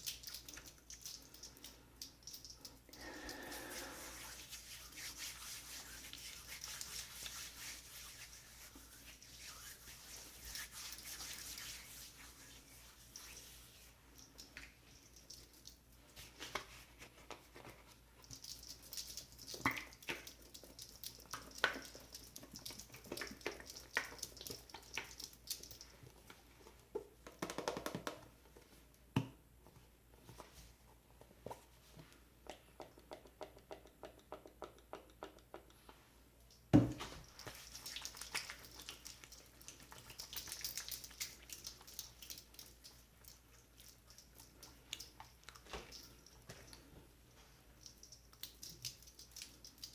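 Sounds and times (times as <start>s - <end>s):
clicks and taps: 26.9s - 28.3s, 32.4s - 36.0s.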